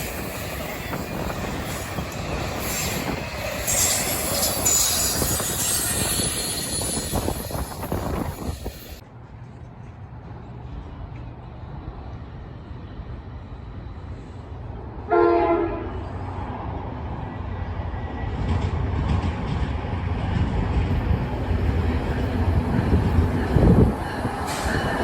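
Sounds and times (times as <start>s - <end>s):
freight train rumble: 0.0s - 25.0s
locomotive air horn blast: 15.1s - 16.1s.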